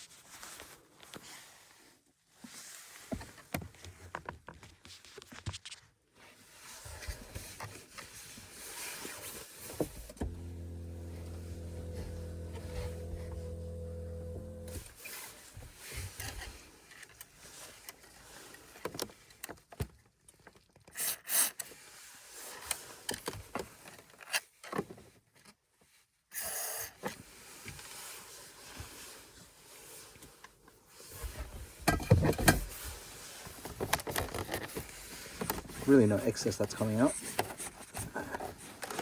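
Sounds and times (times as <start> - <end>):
hands working on plastic trim: 10.1 - 14.8.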